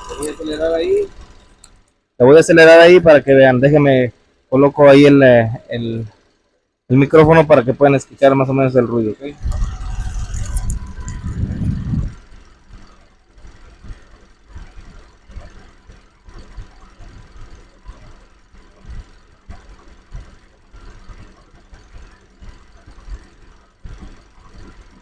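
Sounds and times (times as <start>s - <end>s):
engine rumbling: 0.0s - 6.3s, 6.9s - 25.0s
engine knocking: 0.0s - 25.0s.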